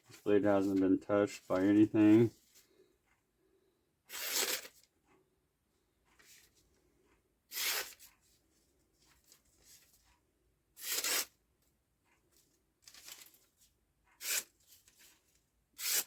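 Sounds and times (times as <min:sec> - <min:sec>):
knife slicing paper: 0:07.5 - 0:08.0, 0:10.8 - 0:11.3, 0:14.2 - 0:14.5, 0:15.8 - 0:16.0.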